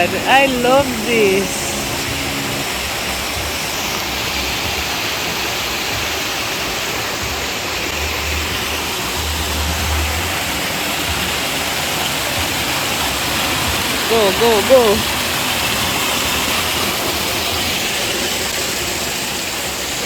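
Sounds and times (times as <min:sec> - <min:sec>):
waterfall rushing: 0:00.0 - 0:20.0
low rumbles: 0:07.9 - 0:12.5.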